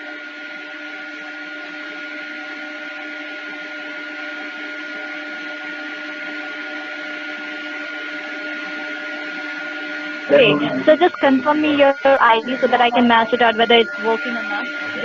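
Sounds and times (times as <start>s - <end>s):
electrical hum: 0.0s - 15.0s
phone line hiss: 8.6s - 15.0s
faint tones: 10.3s - 15.0s.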